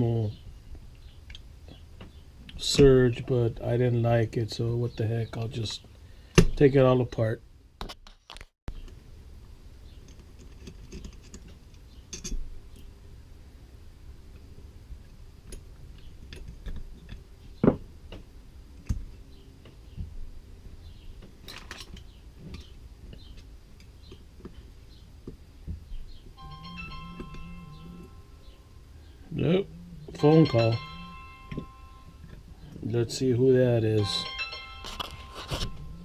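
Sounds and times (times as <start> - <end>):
faint low hum: 8.7 - 36.0.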